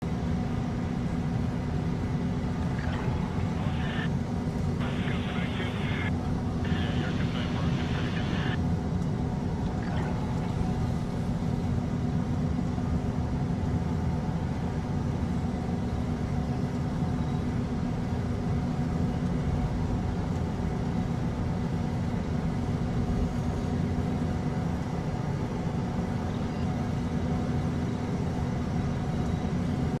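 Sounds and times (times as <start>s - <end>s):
low engine hum: 0.0s - 30.0s
faint steady tones: 1.3s - 13.0s.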